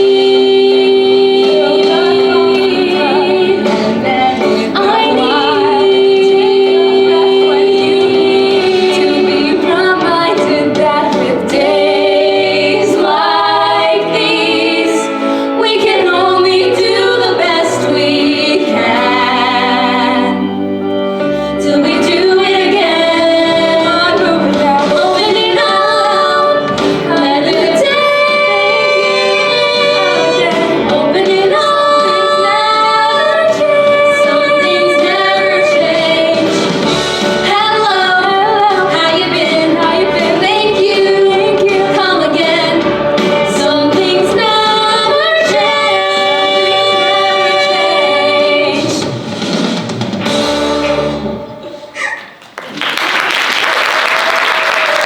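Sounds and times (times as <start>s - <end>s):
women singing with instruments: 0.0s - 20.6s, 21.6s - 49.1s
audience applause: 52.2s - 55.0s.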